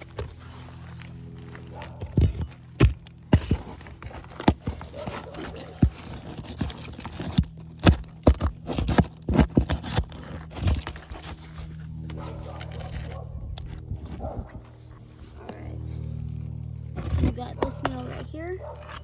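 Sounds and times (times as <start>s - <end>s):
steady low hum: 0.0s - 19.0s
pry tool knocking and scraping: 2.0s - 13.1s, 17.0s - 19.0s.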